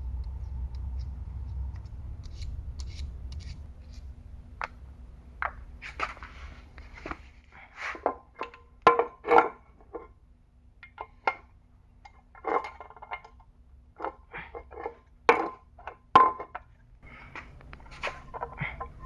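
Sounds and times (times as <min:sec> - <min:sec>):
metal parts and tools clinking: 0:12.0 - 0:16.7, 0:17.8 - 0:19.0.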